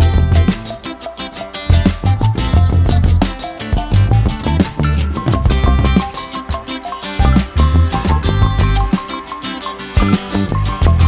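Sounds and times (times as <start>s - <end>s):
upbeat salsa-like music: 0.0s - 11.0s.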